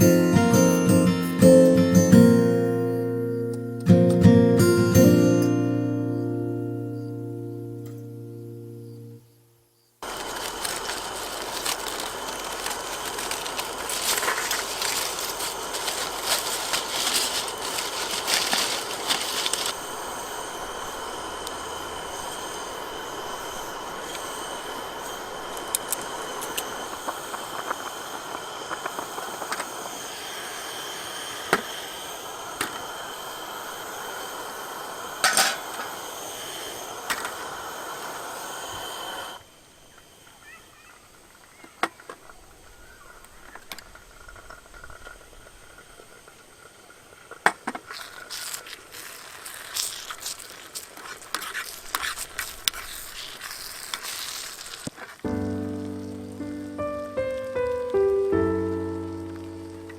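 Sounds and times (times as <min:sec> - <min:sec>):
faint high tones: 0:00.0 - 0:09.5
steady hiss: 0:00.0 - 0:59.9
sharp clicks and cracks: 0:10.0 - 0:19.8.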